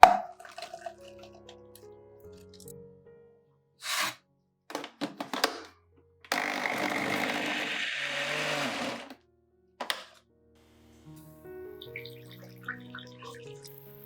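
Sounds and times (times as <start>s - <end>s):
background music: 0.0s - 4.1s, 9.8s - 14.0s
electric blender running: 6.3s - 9.2s.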